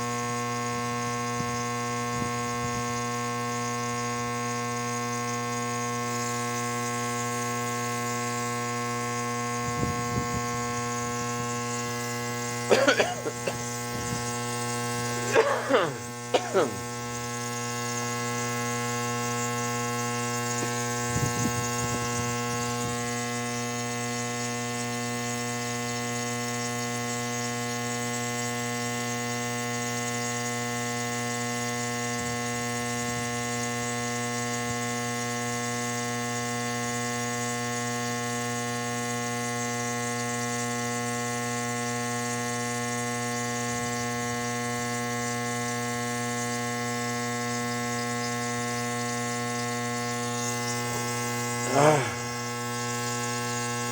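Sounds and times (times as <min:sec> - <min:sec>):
nebulizer electric buzzing hum: 0:06.2 - 0:24.0, 0:47.0 - 0:53.9.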